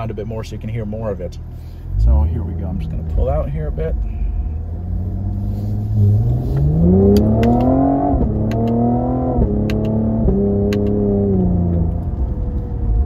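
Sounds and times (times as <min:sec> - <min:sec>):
car engine accelerating hard: 0:01.9 - 0:13.0
exhaust pops: 0:06.4 - 0:12.7.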